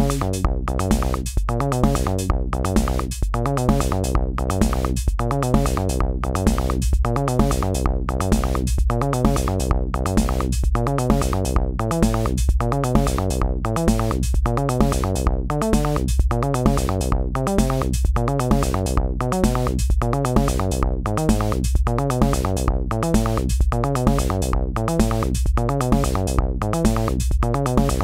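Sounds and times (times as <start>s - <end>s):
bass synth line: 0.0s - 28.0s
drum machine beat: 0.0s - 28.0s.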